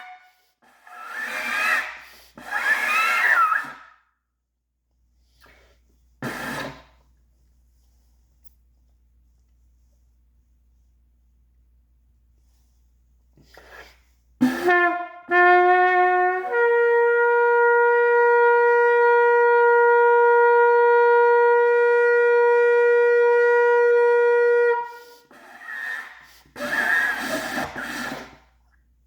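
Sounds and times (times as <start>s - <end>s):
trumpet notes: 14.4s - 25.2s.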